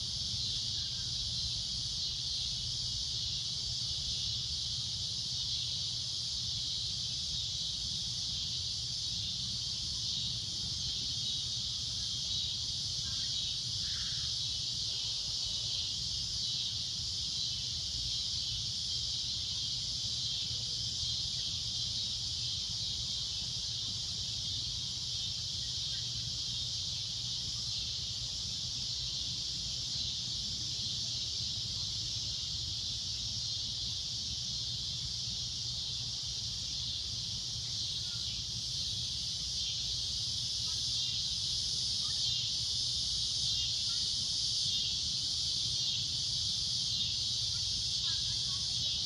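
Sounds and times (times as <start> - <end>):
cicadas droning: 0.0 - 49.0.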